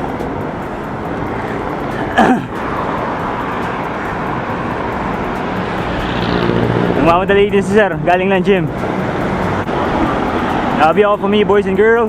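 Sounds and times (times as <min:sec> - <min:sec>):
wind and road noise: 0:00.0 - 0:12.0.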